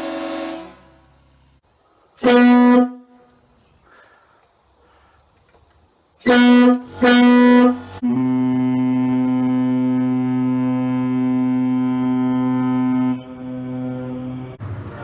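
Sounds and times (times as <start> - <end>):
deep air horn blasts: 0.0 - 1.1, 2.2 - 3.4, 6.2 - 14.6.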